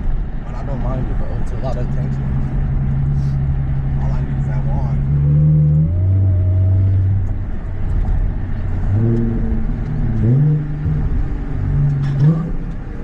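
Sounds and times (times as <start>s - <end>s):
car engine revving: 0.0s - 13.0s.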